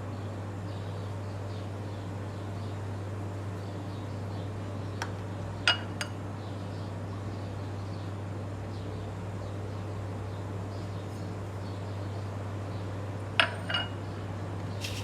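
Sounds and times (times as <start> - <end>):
kitchenware clinking: 13.4 - 14.0.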